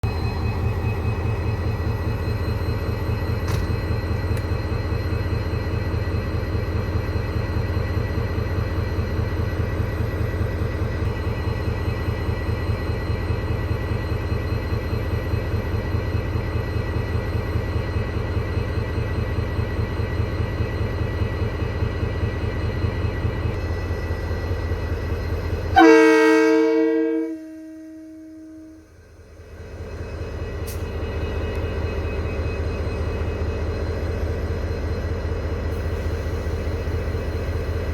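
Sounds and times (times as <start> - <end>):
diesel locomotive engine throbbing: 0.0 - 37.9
multi-tone locomotive horn: 25.7 - 29.0.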